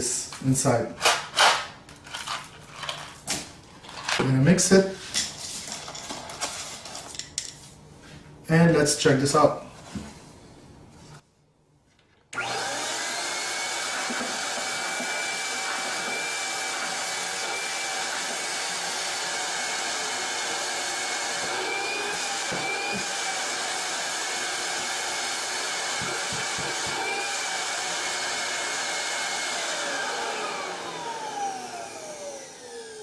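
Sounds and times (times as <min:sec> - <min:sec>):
vacuum cleaner motor whining: 0:12.4 - 0:33.0.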